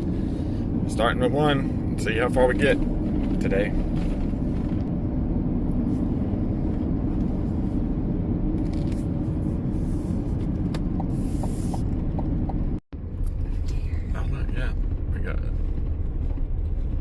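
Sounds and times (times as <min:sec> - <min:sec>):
car engine and tyre rumble: 0:00.0 - 0:17.0.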